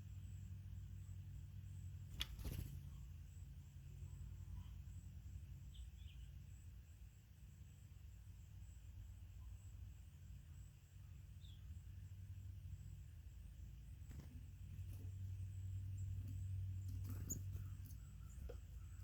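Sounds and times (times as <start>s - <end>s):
steady low hum: 0.0s - 19.0s
bird feet and bills clicking: 2.1s - 2.9s, 14.0s - 19.0s
faint high bird calls: 15.9s - 19.0s.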